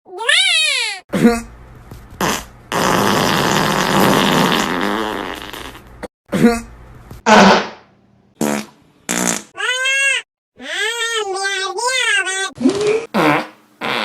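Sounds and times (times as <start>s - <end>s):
fart sound effects: 2.2s - 6.6s, 7.3s - 9.6s, 12.6s - 14.0s.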